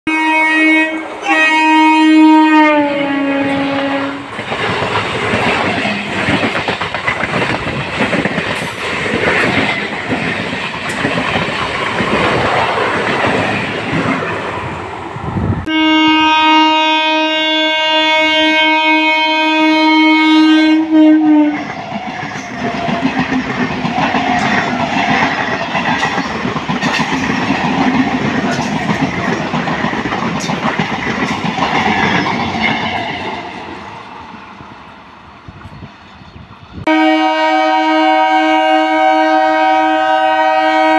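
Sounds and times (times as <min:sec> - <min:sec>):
train horn blasts: 0:00.1 - 0:04.3, 0:15.6 - 0:21.7, 0:36.8 - 0:40.9
train rumble and wheel clatter: 0:00.2 - 0:15.7, 0:16.6 - 0:40.9.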